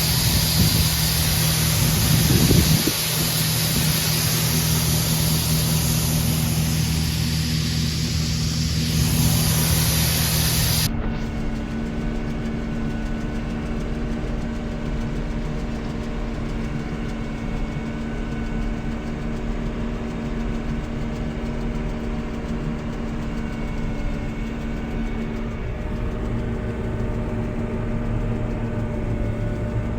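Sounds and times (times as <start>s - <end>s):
loud hiss: 0.0s - 10.9s
combine harvester engine: 0.0s - 18.2s, 22.2s - 29.9s.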